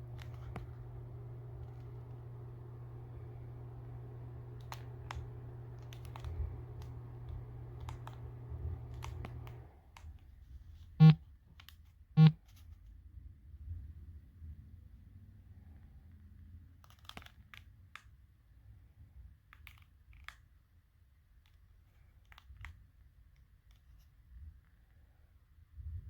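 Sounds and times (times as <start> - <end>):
low electrical hum: 0.0 - 10.2
light clicks: 4.5 - 10.1.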